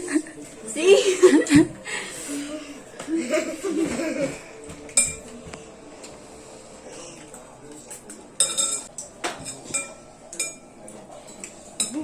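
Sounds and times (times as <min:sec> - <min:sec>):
utensils clinking against a dish: 0:03.7 - 0:06.2, 0:06.9 - 0:12.0.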